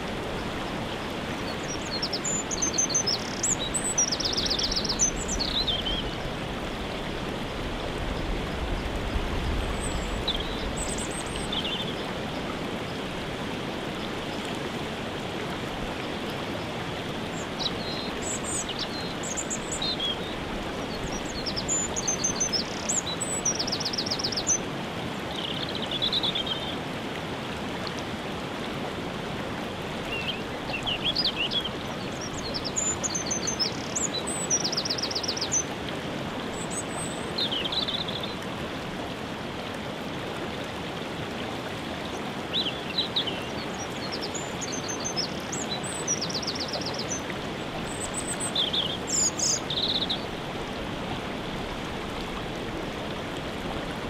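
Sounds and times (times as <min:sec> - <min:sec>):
waterfall rushing: 0:00.0 - 0:54.0
small birds singing: 0:00.3 - 0:06.4, 0:09.5 - 0:13.0, 0:17.3 - 0:24.7, 0:25.3 - 0:26.8, 0:30.1 - 0:35.7, 0:36.5 - 0:38.5, 0:42.0 - 0:50.4.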